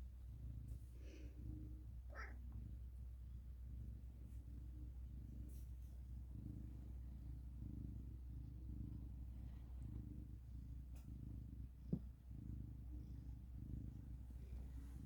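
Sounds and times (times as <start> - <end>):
cat purring: 0.0 - 15.0.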